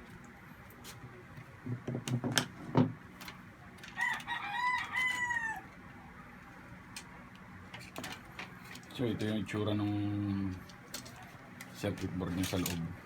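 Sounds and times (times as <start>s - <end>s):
clicks and knocks of fan parts: 0.0s - 5.8s, 6.4s - 13.0s
rooster crowing: 3.9s - 5.8s.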